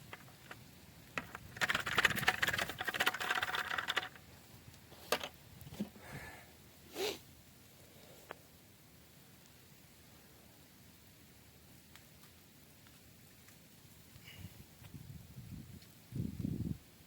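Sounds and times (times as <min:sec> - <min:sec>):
knocks and rustles: 0:00.0 - 0:04.2.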